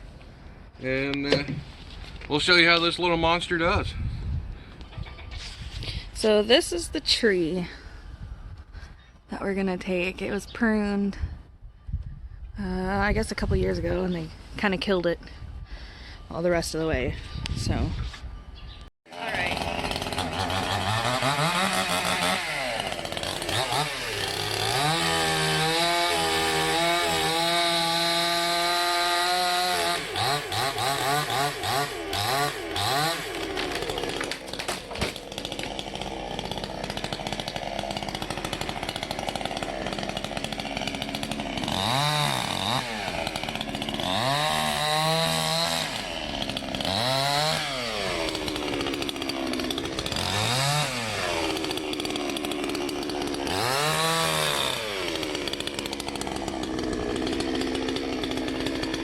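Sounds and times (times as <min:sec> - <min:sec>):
chainsaw revving: 0:19.1 - 0:59.0.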